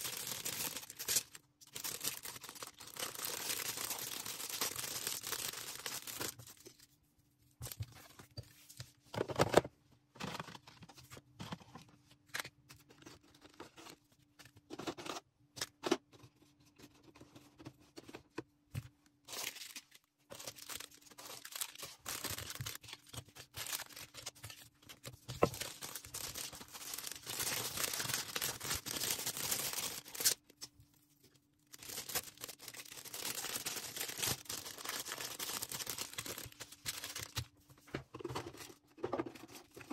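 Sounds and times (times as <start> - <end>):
plastic packaging rustling: 0.0 - 6.7, 19.2 - 30.4, 31.7 - 39.9.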